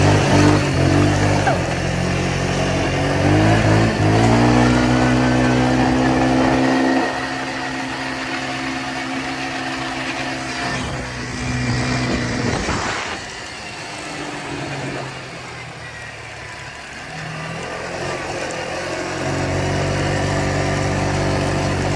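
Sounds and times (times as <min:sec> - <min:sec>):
off-road vehicle engine running: 0:00.0 - 0:21.9
rough rush of noise: 0:05.7 - 0:15.2.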